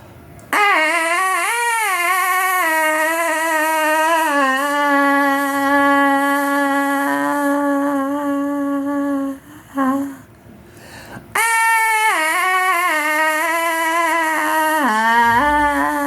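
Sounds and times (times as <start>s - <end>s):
high note sliding down in pitch: 15.3s - 16.0s.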